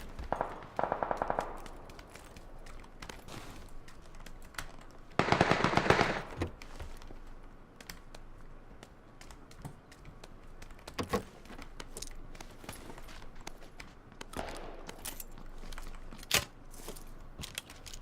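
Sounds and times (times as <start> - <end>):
faint clicks and taps: 6.4 - 16.3.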